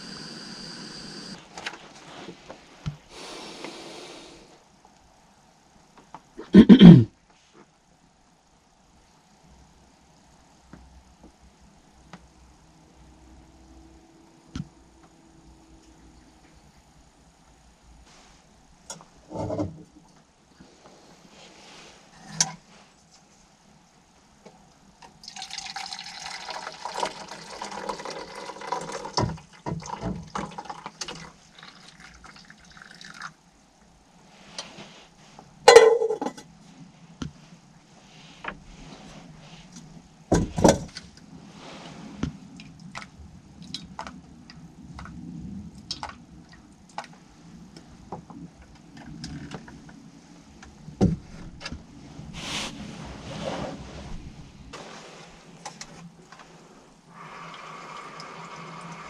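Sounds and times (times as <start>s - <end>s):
liquid pouring: 25.2s - 33.4s, 57.1s - 59.0s.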